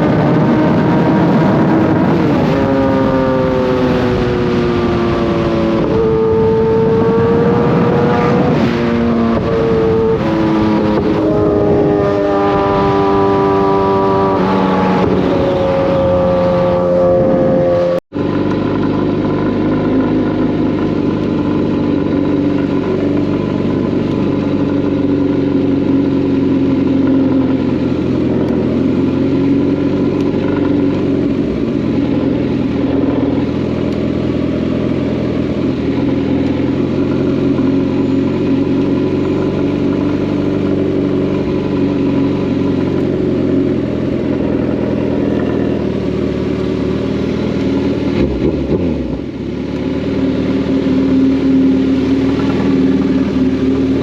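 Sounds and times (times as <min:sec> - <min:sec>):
motorcycle engine cruising: 0:00.0 - 0:54.0.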